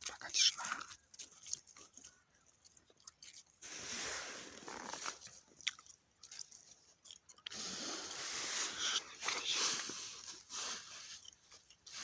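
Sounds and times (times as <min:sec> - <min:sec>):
snow and ice crunching: 0:03.6 - 0:05.4, 0:07.5 - 0:12.0.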